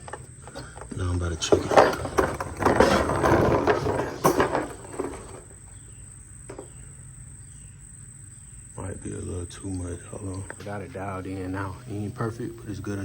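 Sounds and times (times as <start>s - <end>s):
clattering handling noise: 0.0s - 7.0s
high-pitched insect trill: 5.5s - 13.0s.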